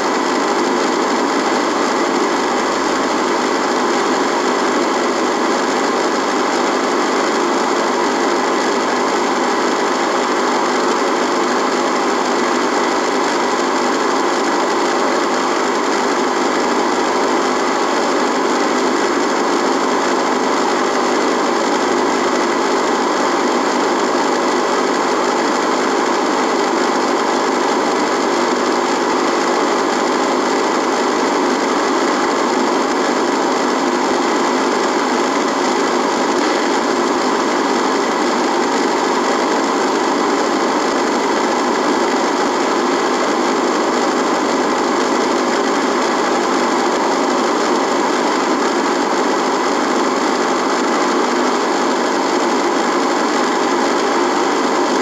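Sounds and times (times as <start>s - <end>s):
radio static buzz: 0.0s - 55.0s.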